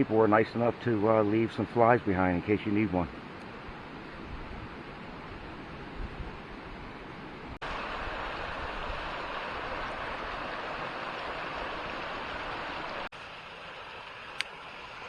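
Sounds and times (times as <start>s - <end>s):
creek water rushing over rocks: 7.6s - 15.0s.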